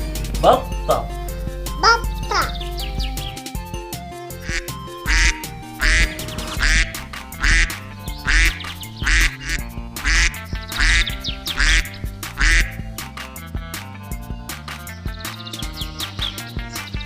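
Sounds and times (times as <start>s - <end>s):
light background music: 0.0s - 17.0s
duck quacking: 1.8s - 3.4s, 4.4s - 12.9s.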